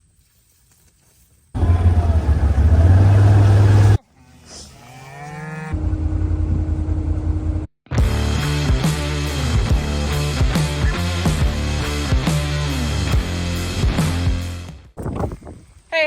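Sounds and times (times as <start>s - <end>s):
low engine rumble: 1.6s - 4.0s
machine hum: 1.6s - 4.0s
cow mooing: 4.7s - 5.8s
music: 7.9s - 14.9s.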